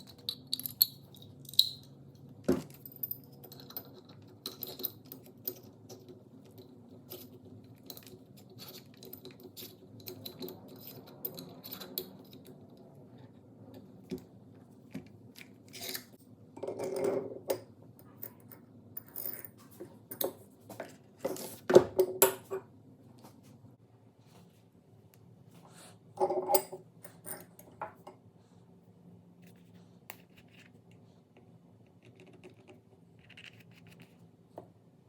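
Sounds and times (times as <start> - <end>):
small metal parts clinking: 0.0 - 2.0.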